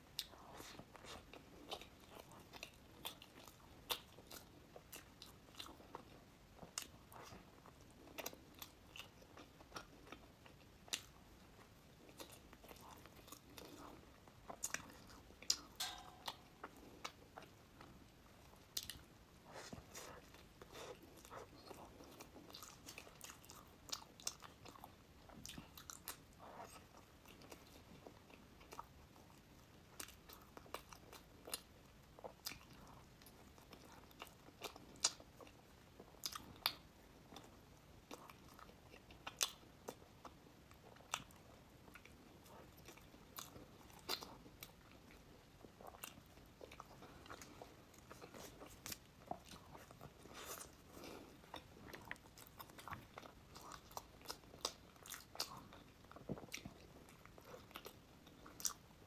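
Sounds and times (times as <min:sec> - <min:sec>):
crunchy pastry chewing: 0:00.0 - 0:59.0
soft mouth sounds: 0:06.6 - 0:24.7, 0:37.4 - 0:58.8.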